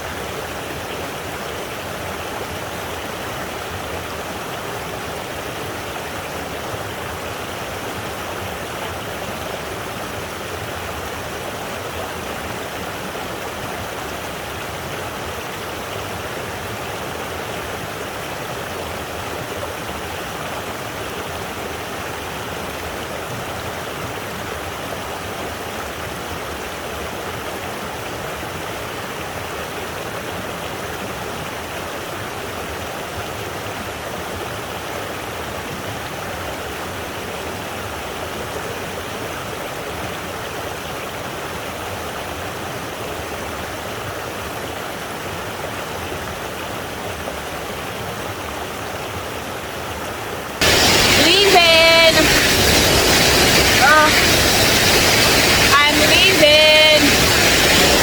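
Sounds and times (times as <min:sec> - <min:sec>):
waterfall roaring: 0:48.3 - 0:58.0.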